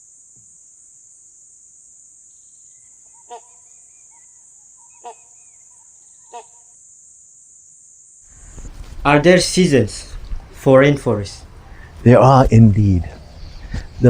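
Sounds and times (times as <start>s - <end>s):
faint bird chirps: 2.2s - 6.8s, 11.4s - 14.0s
short loud animal calls: 3.1s - 6.7s.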